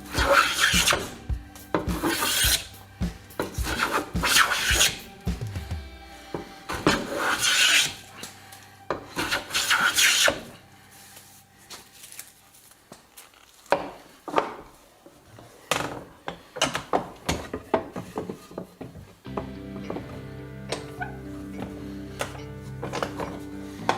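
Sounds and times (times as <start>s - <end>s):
file scraping across workpiece: 0.2s - 1.2s, 6.7s - 8.3s, 8.9s - 10.6s.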